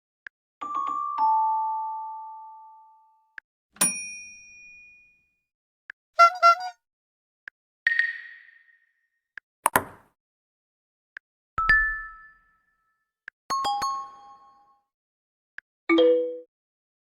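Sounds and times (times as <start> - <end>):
knock-like notification click: 9.7 - 10.1.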